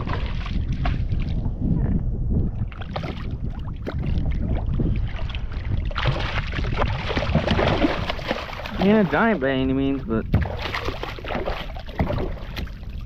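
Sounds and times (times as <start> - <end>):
wind rumbling on microphone: 0.0 - 13.0
small knocks and clicks on boat: 10.3 - 13.0.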